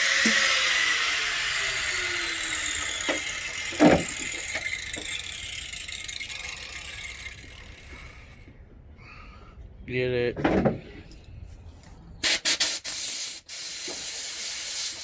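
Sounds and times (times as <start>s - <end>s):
power tool motor winding down: 0.0s - 8.5s.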